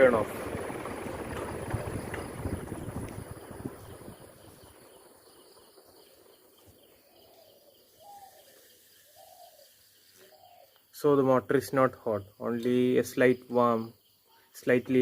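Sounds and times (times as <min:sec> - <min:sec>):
ceiling fan air noise: 0:00.0 - 0:07.0.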